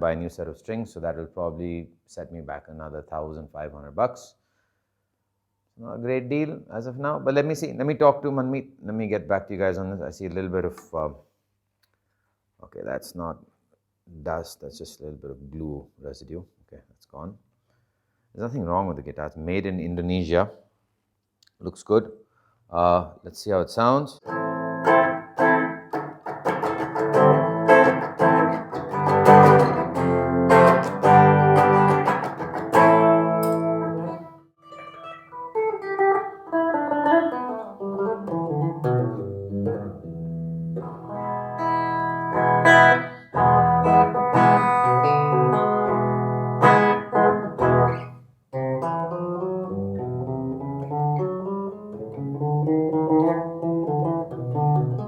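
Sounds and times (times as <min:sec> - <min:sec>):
electric guitar notes and chords: 0:24.2 - 0:55.0.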